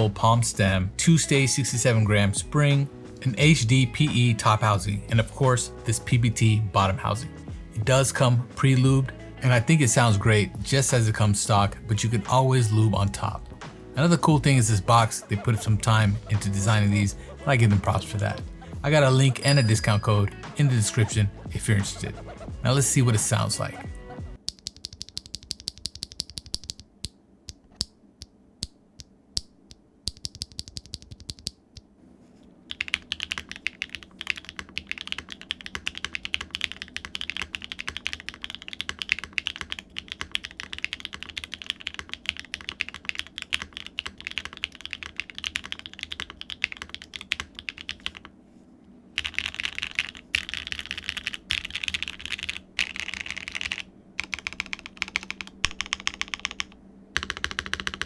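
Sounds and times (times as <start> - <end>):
mechanical keyboard typing: 24.4 - 26.9, 30.1 - 31.8, 32.7 - 48.3, 49.2 - 58.0.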